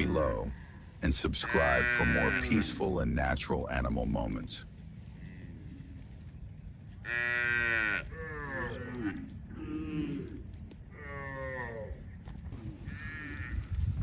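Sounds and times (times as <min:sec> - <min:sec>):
cows mooing: 0:01.4 - 0:02.9, 0:07.0 - 0:13.7.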